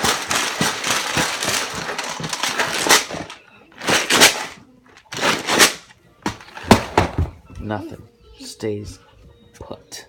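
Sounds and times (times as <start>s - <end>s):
plastic rattling and clicking: 0.0s - 7.3s.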